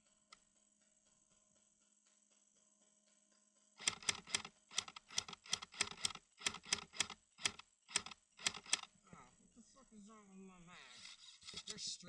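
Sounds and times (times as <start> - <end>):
sharp clicks: 3.8 - 8.9.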